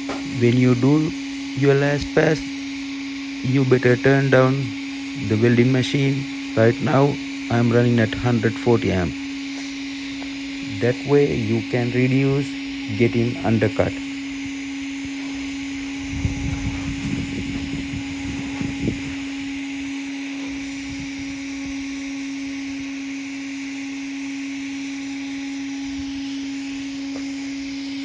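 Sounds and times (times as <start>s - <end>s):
uneven rough noise: 0.0s - 28.0s
welding arc hum and hiss: 0.0s - 28.0s.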